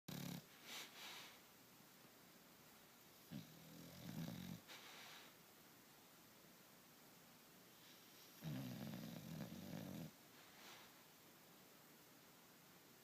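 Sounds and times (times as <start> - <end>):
dog snoring: 0.1 - 0.5, 3.2 - 4.7, 7.8 - 10.2
dog hissing breath: 0.5 - 1.4, 4.6 - 5.4.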